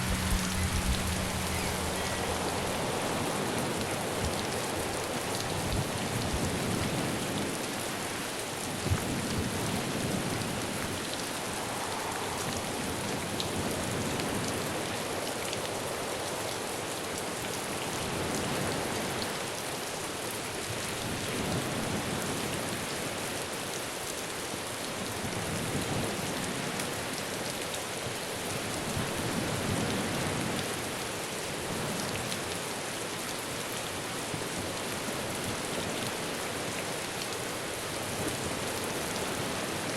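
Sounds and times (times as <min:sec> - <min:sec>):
wind gusts: 0:00.0 - 0:16.0
heavy rain: 0:00.0 - 0:39.9.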